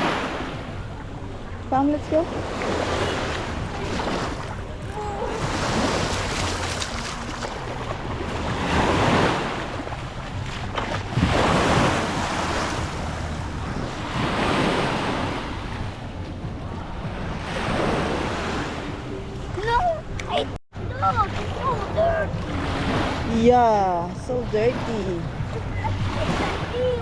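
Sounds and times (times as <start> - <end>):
sea waves washing onto shore: 0.0 - 16.3
wind rumbling on microphone: 0.0 - 20.2.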